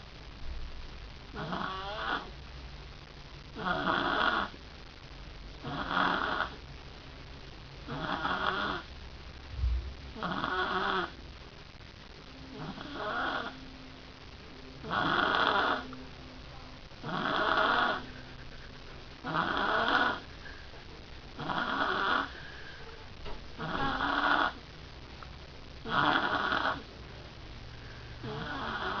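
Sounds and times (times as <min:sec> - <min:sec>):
girl snoring: 0:01.3 - 0:02.3, 0:03.6 - 0:04.6, 0:05.6 - 0:06.6, 0:07.9 - 0:08.9, 0:10.1 - 0:11.2, 0:12.5 - 0:13.6, 0:14.8 - 0:16.0, 0:17.0 - 0:18.2, 0:19.2 - 0:20.3, 0:21.4 - 0:22.8, 0:23.6 - 0:24.6, 0:25.8 - 0:26.9, 0:28.2 - 0:29.0.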